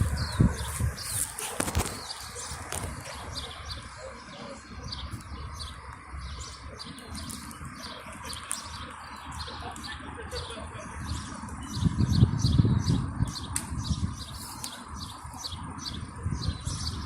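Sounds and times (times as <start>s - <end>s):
small birds chirping: 0.0s - 17.0s
steady low rumble: 0.0s - 17.0s.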